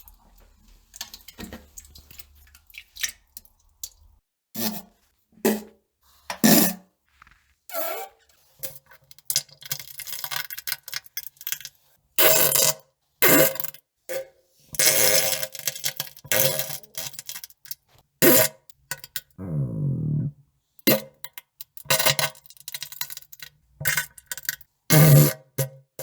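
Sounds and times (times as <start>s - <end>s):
farting noises: 19.4s - 20.3s, 24.9s - 25.4s.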